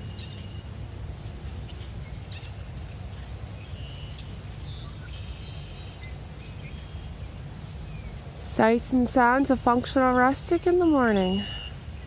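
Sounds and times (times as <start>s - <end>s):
high bird chirps: 10.6s - 12.0s.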